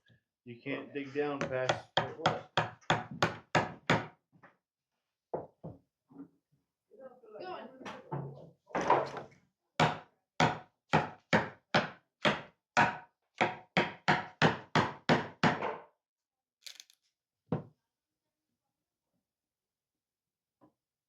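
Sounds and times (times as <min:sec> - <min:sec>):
chisel knocking into wood: 0:01.4 - 0:04.2.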